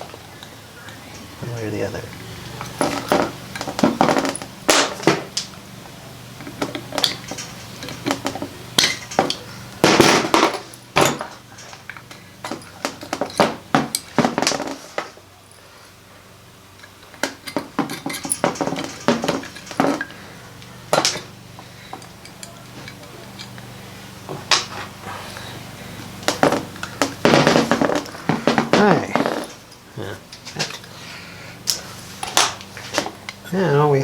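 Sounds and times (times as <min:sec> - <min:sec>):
metal parts clinking: 0:01.1 - 0:05.6, 0:06.3 - 0:15.6, 0:16.7 - 0:25.1.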